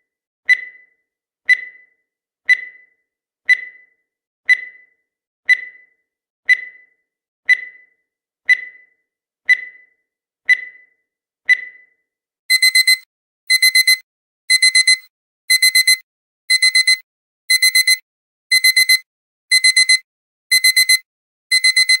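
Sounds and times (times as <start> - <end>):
digital alarm clock beeping: 0.5 - 22.0
countdown timer beeps: 12.5 - 22.0.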